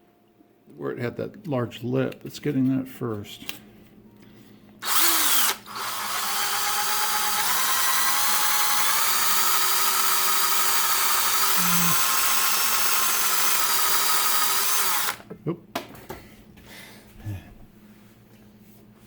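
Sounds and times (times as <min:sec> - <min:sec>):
electric drill whirring: 0:04.8 - 0:15.2.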